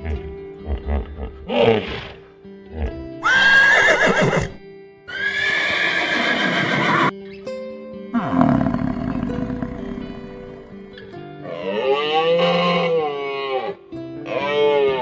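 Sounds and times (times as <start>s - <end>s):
background music: 0.0s - 15.0s
harsh animal call: 3.2s - 4.5s.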